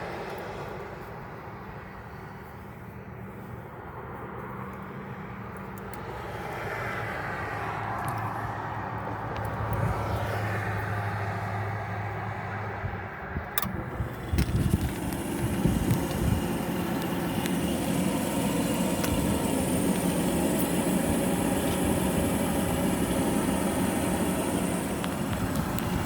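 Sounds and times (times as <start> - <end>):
furnace fan motor running: 13.6 - 26.0.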